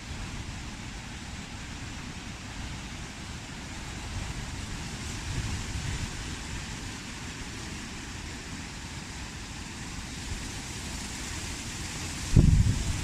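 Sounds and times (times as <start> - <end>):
wind gusting against microphone: 0.0 - 13.0
wind blowing: 11.6 - 13.0.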